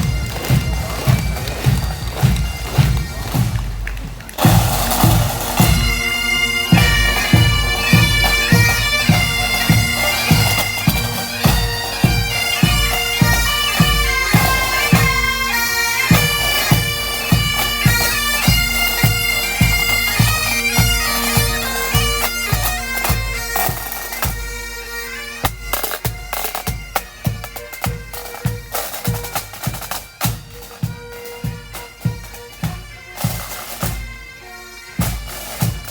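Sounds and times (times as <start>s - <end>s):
bass drum beating: 0.0s - 8.6s
bagpipes playing a tune: 0.0s - 35.9s.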